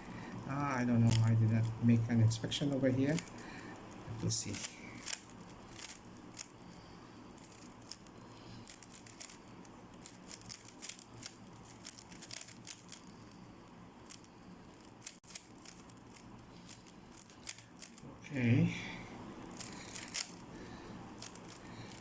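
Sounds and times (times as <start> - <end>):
puzzle cube layers clicking: 0.7 - 1.8, 10.0 - 13.2.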